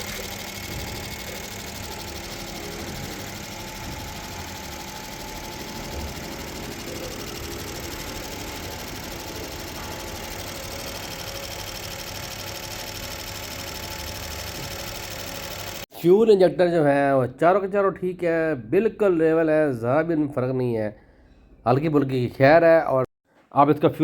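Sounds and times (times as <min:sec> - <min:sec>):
fuel injectors buzzing: 0:00.0 - 0:15.9.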